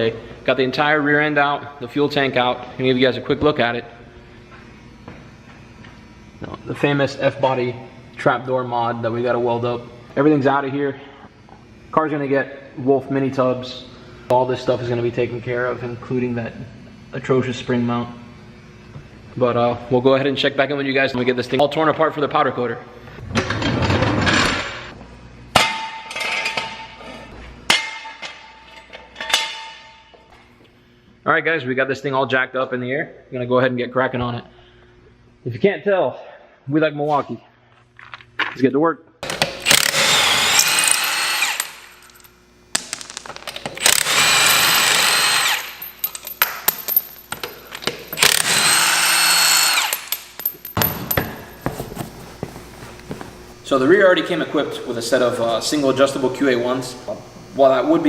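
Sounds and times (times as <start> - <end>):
cordless drill whining: 39.6 - 41.9, 43.8 - 45.8, 48.2 - 50.1.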